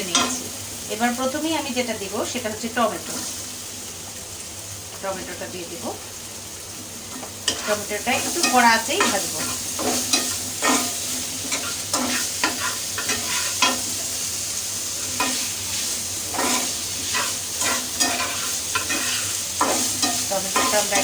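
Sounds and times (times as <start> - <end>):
food sizzling in oil: 0.0 - 21.0
spatula scraping a pan: 7.1 - 21.0.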